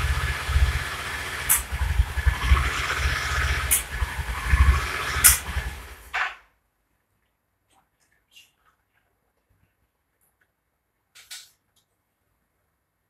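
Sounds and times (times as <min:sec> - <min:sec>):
engine running unevenly: 0:00.0 - 0:06.2
engine backfire pops: 0:01.4 - 0:01.8, 0:03.6 - 0:05.7.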